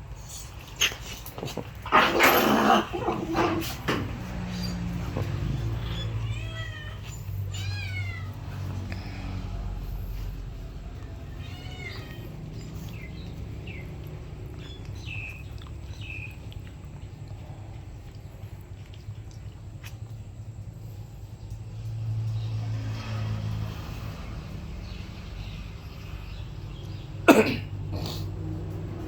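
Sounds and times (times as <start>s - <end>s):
dog whimpering: 4.5s - 8.6s.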